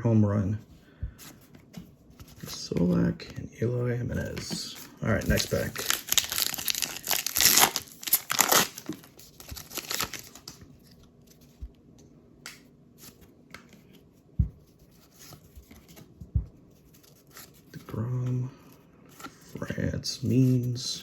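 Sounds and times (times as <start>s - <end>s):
cards rustling and ticking: 1.2s - 11.7s
wrapper tearing and crinkling: 5.3s - 10.5s.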